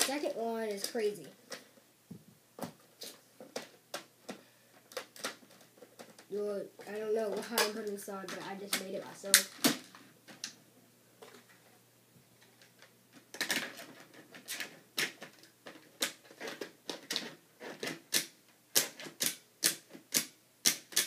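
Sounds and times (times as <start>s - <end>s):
plastic parts clicking: 3.4s - 6.3s, 7.3s - 10.6s, 12.4s - 21.0s.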